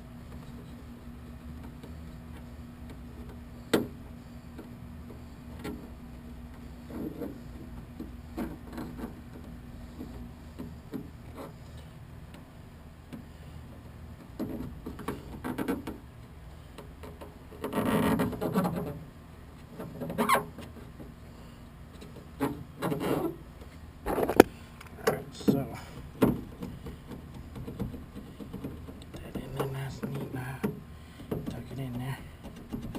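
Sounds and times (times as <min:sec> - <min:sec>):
mat rubbing on sheet metal: 0:01.9 - 0:11.9.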